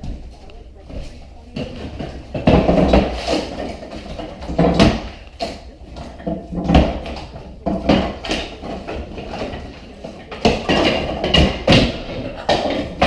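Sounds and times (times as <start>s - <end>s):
sharp knocks and thumps: 0.0s - 13.0s.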